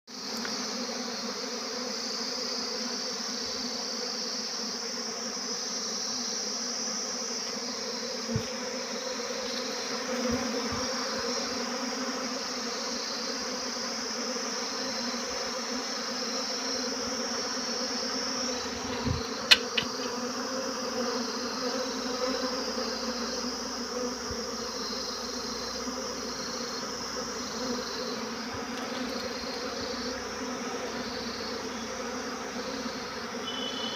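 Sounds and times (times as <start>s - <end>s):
bees buzzing: 0.1s - 33.9s
high-pitched hiss: 17.6s - 20.3s, 32.5s - 33.9s
sharp clicks and knocks: 19.4s - 20.1s.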